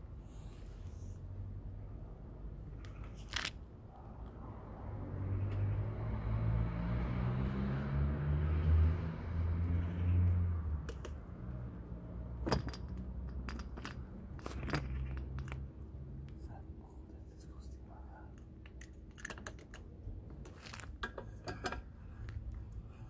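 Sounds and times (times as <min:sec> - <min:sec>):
sharp clicks and knocks: 0:10.8 - 0:11.2.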